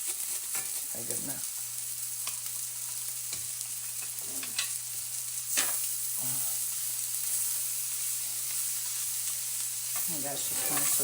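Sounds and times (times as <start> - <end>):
utensil scraping a pan: 0.0 - 1.0, 9.9 - 11.0
vegetables sizzling in a pan: 0.0 - 11.0.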